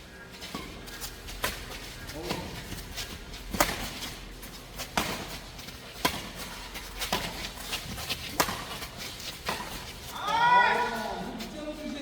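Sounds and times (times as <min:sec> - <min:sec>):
rackets hitting shuttlecock: 0:03.5 - 0:04.0, 0:04.8 - 0:10.4.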